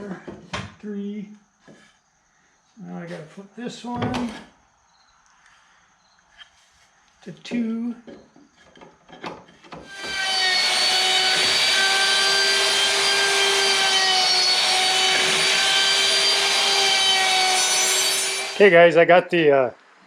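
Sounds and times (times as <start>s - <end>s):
router whining: 9.8s - 18.7s.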